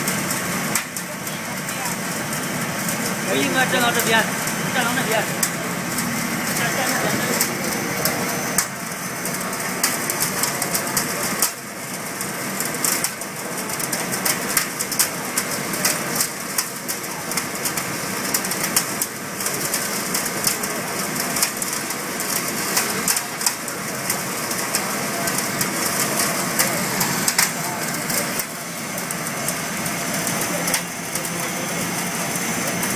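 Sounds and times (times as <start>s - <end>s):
rapid crackling: 0.0s - 32.9s
rushing flame and blower: 0.0s - 32.9s.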